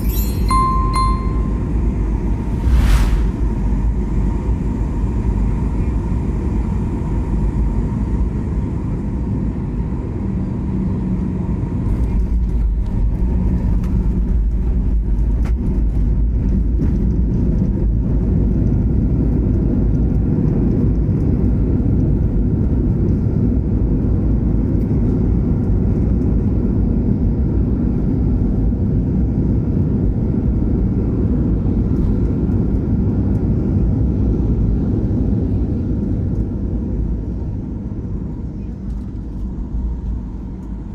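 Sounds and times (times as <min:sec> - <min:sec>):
jet engine cabin rumble: 0:00.0 - 0:40.9.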